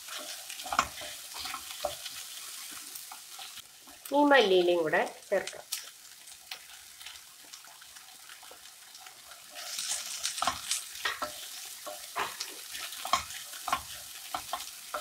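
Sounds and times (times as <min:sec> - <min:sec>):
utensil scraping a frying pan: 0:00.0 - 0:04.0, 0:09.3 - 0:15.0
food sizzling: 0:00.0 - 0:15.0.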